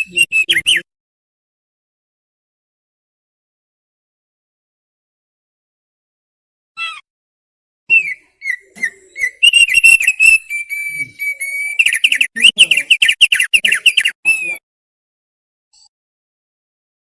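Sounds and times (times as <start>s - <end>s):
bird singing whistled notes: 7.9s - 14.6s.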